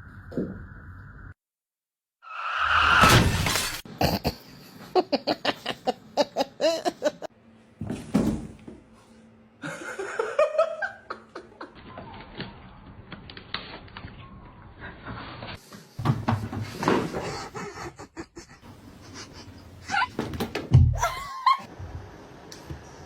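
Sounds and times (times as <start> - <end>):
person laughing hard: 4.0 - 7.3, 17.0 - 20.2, 21.0 - 21.7.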